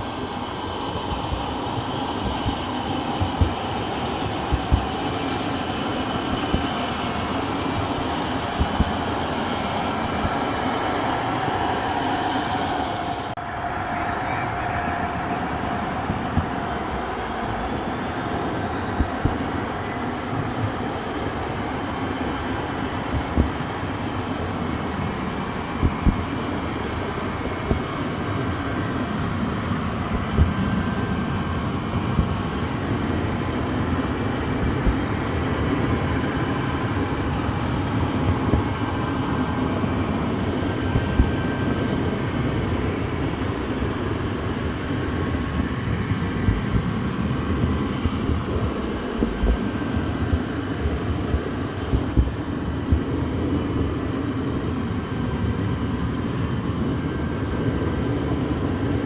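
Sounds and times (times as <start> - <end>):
train rumble: 0.0 - 59.0.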